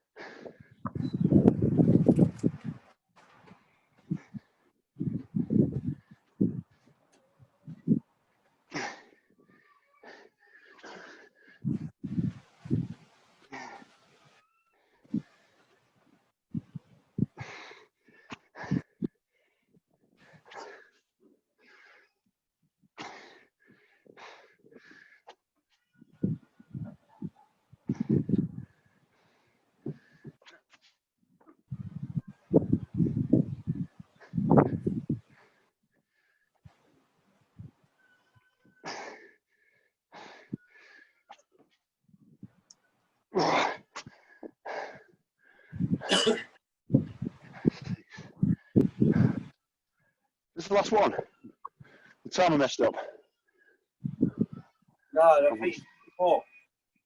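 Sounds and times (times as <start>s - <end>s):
men breathing hard: 0.1s - 1.0s, 8.7s - 12.9s, 16.6s - 22.3s, 23.0s - 25.4s, 27.8s - 30.6s, 38.8s - 41.3s, 43.6s - 46.0s, 47.1s - 49.6s, 51.6s - 52.3s.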